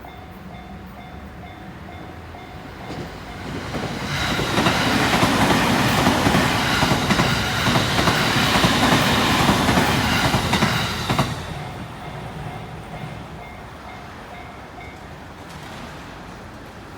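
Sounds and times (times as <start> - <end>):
crossing warning bell ringing: 0.0 - 15.3
train wheels clattering over rail joints: 2.6 - 12.6.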